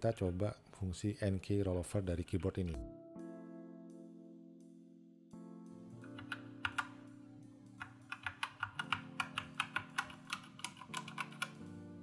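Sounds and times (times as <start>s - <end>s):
guitar background music: 2.5s - 12.0s
mechanical keyboard clacking: 6.0s - 7.0s, 7.8s - 11.6s.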